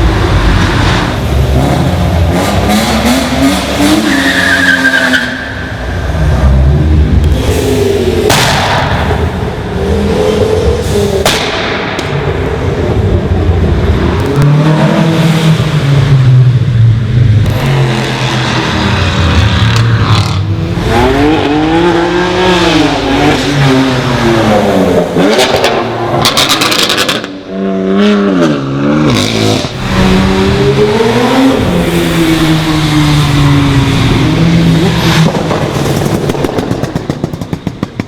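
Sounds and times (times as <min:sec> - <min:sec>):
car engines revving: 0:00.0 - 0:38.0
exhaust pops: 0:35.1 - 0:38.0.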